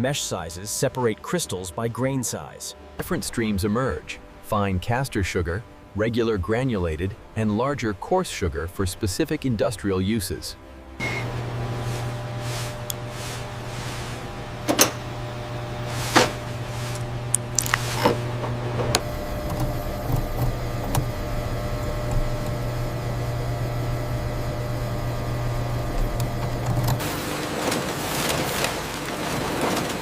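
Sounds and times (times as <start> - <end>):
factory machinery humming: 10.6 - 30.0
sharp clicks and knocks: 17.3 - 21.2.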